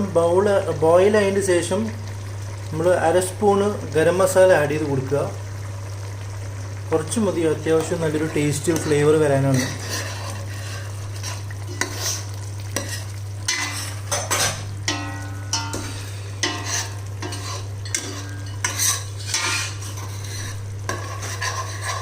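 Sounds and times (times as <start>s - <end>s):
steady low hum: 0.0s - 22.0s
metal spoon scraping a pot: 8.6s - 22.0s.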